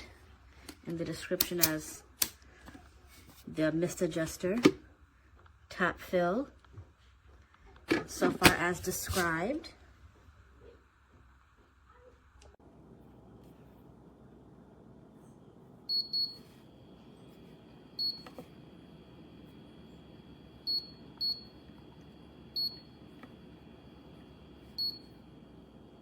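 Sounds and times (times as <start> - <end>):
humidifier control beeps: 15.8 - 26.0.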